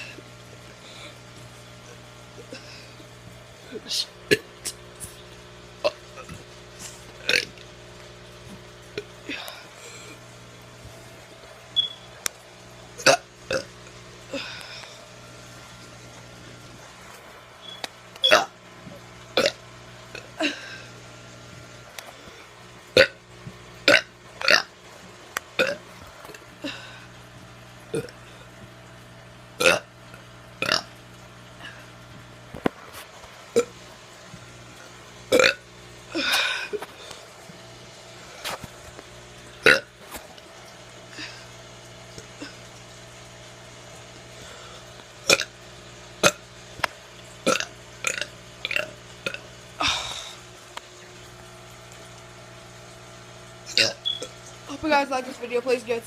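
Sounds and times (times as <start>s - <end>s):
steady low hum: 0.0s - 56.0s
boy burping: 7.2s - 7.6s, 13.0s - 13.7s, 18.2s - 18.6s, 19.4s - 20.8s, 23.0s - 23.2s, 23.9s - 24.7s, 25.6s - 26.9s, 27.9s - 28.2s, 29.6s - 29.9s, 30.6s - 30.9s, 35.3s - 36.8s, 39.6s - 39.9s, 45.3s - 45.6s, 47.4s - 50.4s, 53.7s - 54.2s.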